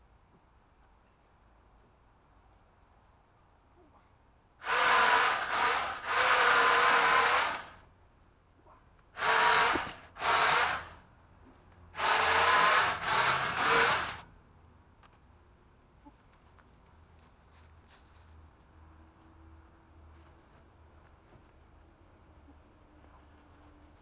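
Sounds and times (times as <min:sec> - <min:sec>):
pole saw motor whining: 0:04.6 - 0:07.8, 0:09.2 - 0:11.0, 0:12.0 - 0:14.2.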